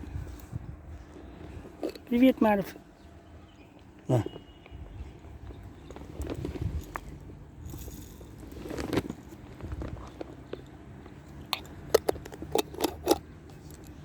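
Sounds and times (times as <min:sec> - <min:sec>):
cat crunching dry food: 0:01.4 - 0:02.3, 0:05.9 - 0:14.0.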